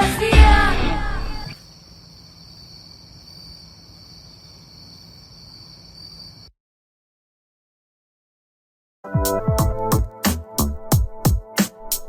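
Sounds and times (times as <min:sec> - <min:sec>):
crickets trilling: 0:01.5 - 0:06.5.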